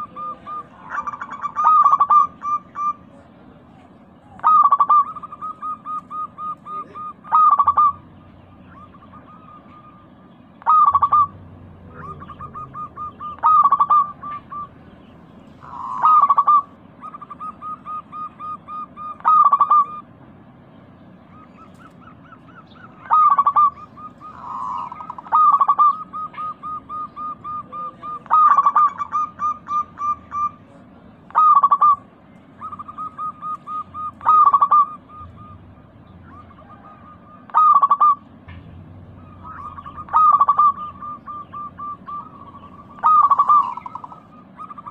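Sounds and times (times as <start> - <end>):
dove cooing: 0.0 - 20.1, 21.2 - 38.3, 39.0 - 44.9.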